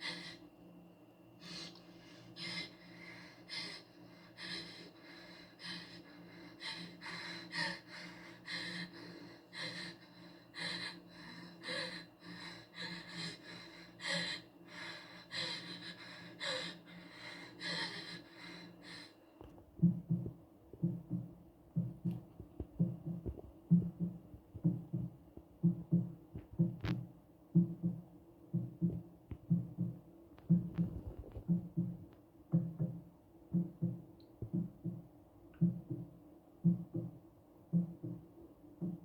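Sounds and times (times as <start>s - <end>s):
steady low hum: 0.0s - 39.0s.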